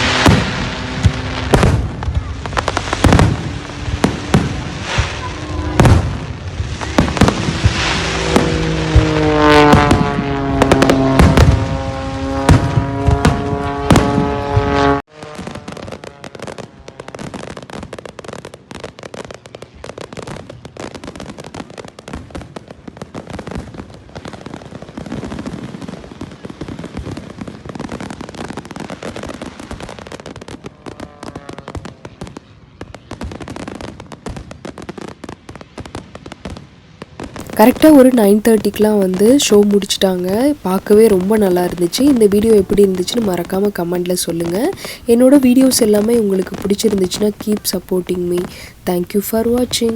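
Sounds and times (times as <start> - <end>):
fireworks crackling and popping: 0.0 - 49.9
loud steady pitched tone: 37.4 - 49.9.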